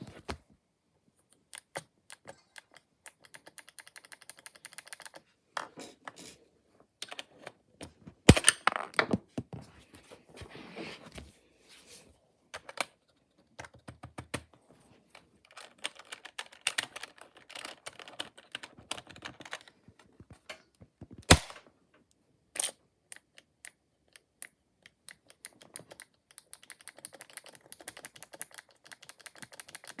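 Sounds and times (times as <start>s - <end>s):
keyboard typing: 1.6s - 5.2s, 13.6s - 14.5s, 15.5s - 19.7s, 23.2s - 30.0s.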